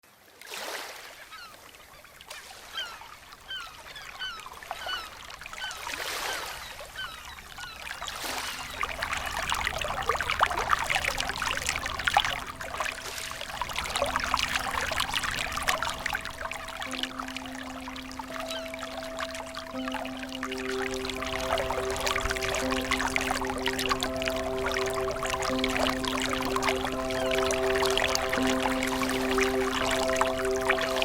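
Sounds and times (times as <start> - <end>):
waterfall pouring and splashing: 8.1 - 31.0.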